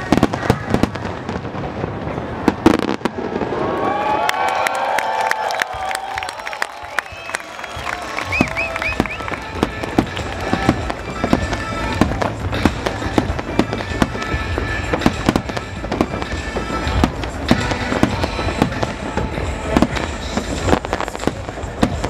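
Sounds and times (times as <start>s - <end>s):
fireworks bangs and crackles: 0.0s - 4.2s, 5.6s - 22.0s
music playing: 7.6s - 22.0s.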